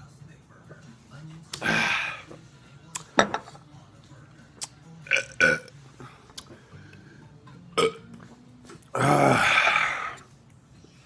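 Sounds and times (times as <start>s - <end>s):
man belching: 5.1s - 5.7s, 7.8s - 8.0s, 8.9s - 10.2s.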